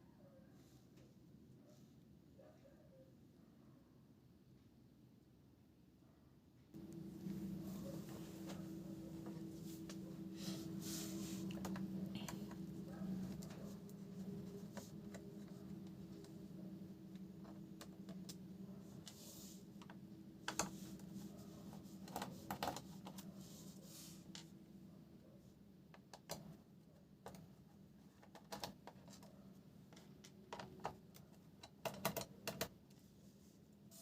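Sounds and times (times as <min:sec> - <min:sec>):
low hum: 0:06.8 - 0:19.0.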